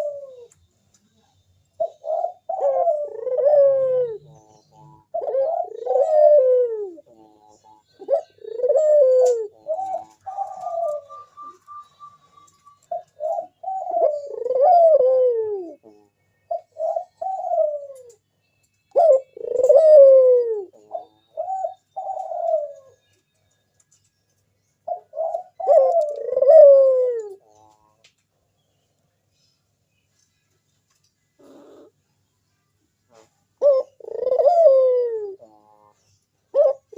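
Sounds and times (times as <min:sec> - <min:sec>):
dove cooing: 0:00.0 - 0:00.6, 0:01.8 - 0:18.2, 0:18.9 - 0:23.1, 0:24.8 - 0:28.0, 0:31.4 - 0:32.1, 0:33.1 - 0:36.9.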